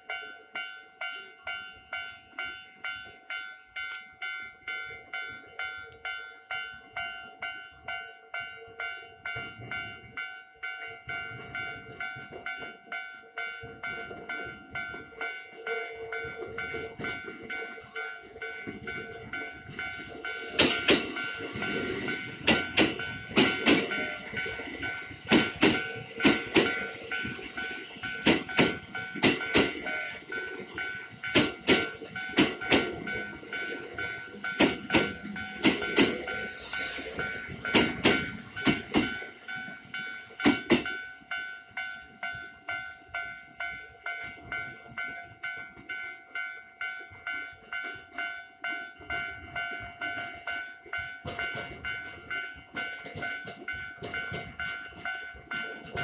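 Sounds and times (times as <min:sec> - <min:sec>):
level-crossing warning bell: 0:00.0 - 0:56.0
train wheels clattering over rail joints: 0:16.2 - 0:41.0, 0:47.0 - 0:56.0.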